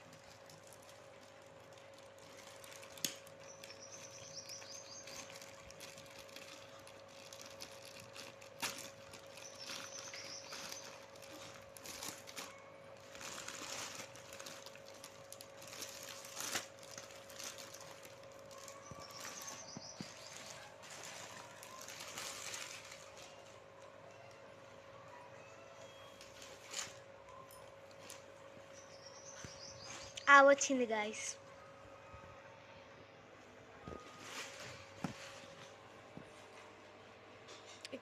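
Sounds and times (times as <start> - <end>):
packaging rustling and crinkling: 0.0 - 24.5, 25.8 - 30.1, 33.9 - 35.8
faint steady hum: 0.0 - 38.0
faint high chirps: 23.2 - 26.5.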